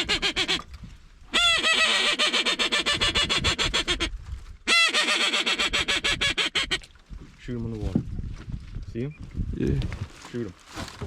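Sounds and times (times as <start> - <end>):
waterfowl honking and quacking: 0.0 - 0.6, 1.3 - 4.1, 4.7 - 6.9.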